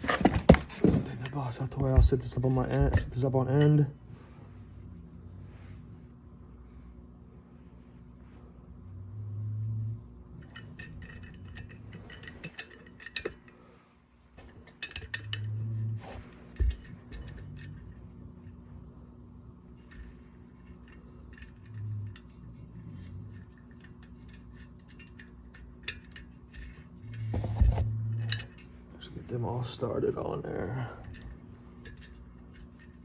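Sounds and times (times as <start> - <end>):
bolts and nuts clinking on metal: 10.3 - 13.7, 14.4 - 18.6, 19.7 - 33.0.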